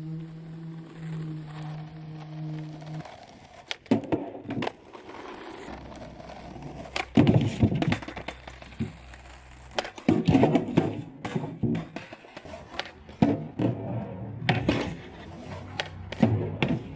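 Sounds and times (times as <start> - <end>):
skateboard wheels rolling: 0.0 - 16.9
skateboard knocks: 3.6 - 5.6, 6.3 - 16.9
skateboard clattering landing: 6.3 - 16.9.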